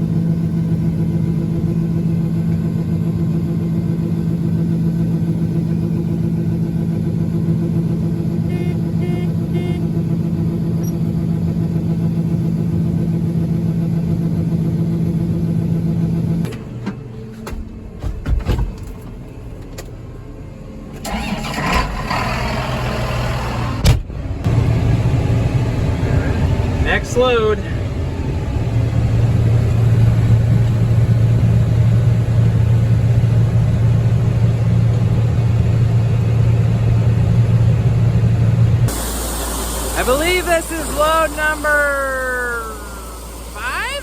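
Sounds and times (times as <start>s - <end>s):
farm vehicle engine running: 0.0s - 44.0s
knocks: 16.9s - 19.0s
rough noisy machine: 21.0s - 33.4s, 37.0s - 44.0s.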